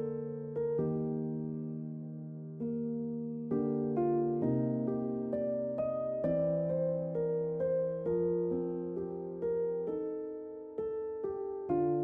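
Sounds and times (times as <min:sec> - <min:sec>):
electric piano melody: 0:00.0 - 0:12.0.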